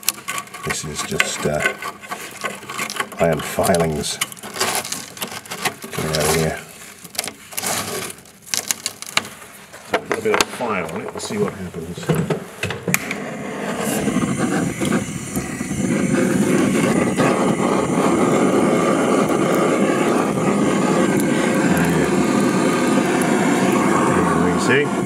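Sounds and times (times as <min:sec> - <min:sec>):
blowtorch flame roaring: 0:00.0 - 0:06.7, 0:12.9 - 0:25.0.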